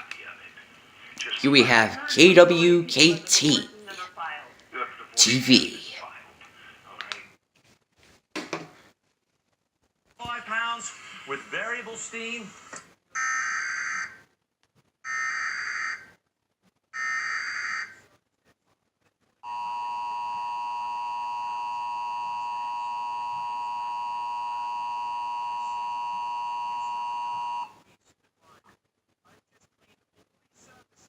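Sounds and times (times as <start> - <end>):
two-tone alert signal: 19.5 - 27.7
screeching data bursts: 19.6 - 27.7.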